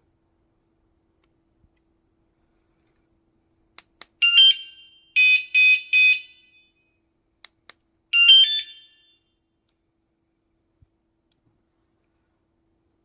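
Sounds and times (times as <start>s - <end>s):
alarm unit chirps and beeps: 4.2s - 6.8s, 8.2s - 9.2s.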